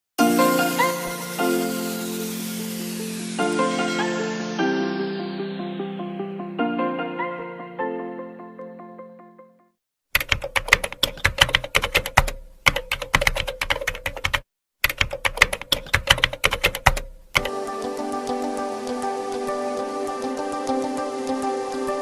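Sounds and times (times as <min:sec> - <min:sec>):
soft music: 0:00.2 - 0:09.7, 0:17.4 - 0:22.0
keyboard typing clicks: 0:10.2 - 0:17.5.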